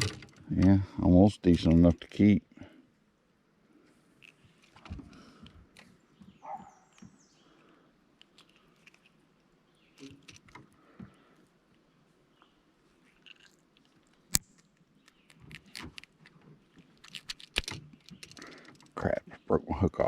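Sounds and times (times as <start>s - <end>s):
hands handling fishing tackle: 3.9s - 11.8s, 12.4s - 19.0s.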